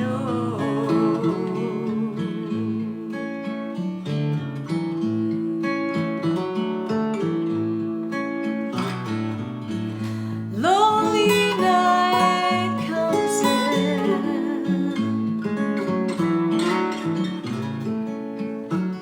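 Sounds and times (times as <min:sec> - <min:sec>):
person singing: 0:00.0 - 0:06.8, 0:10.5 - 0:15.5
acoustic guitar picking: 0:00.0 - 0:19.0.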